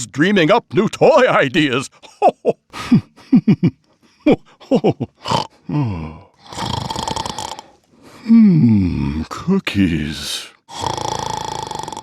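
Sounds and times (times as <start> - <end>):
rattling snore: 6.4 - 7.8, 10.7 - 12.0.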